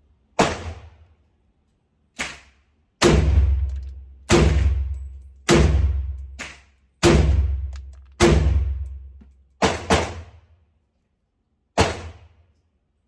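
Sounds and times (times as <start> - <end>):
pistol gunshots: 0.4 - 1.0, 2.2 - 10.4, 11.8 - 12.3.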